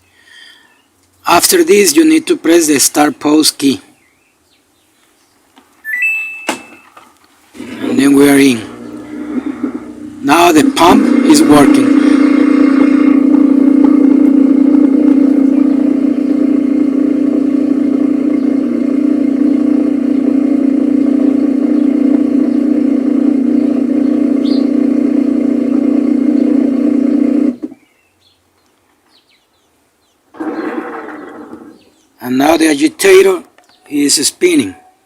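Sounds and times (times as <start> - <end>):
washing machine pump hum: 7.6 - 13.8.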